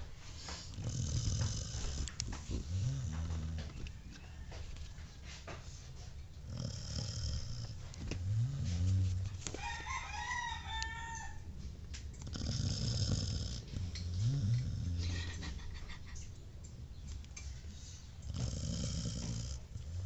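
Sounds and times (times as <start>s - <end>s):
dog snoring: 0.4s - 3.9s, 6.4s - 9.4s, 12.2s - 15.4s, 18.2s - 20.0s
rooster crowing: 3.8s - 5.4s, 9.5s - 11.5s.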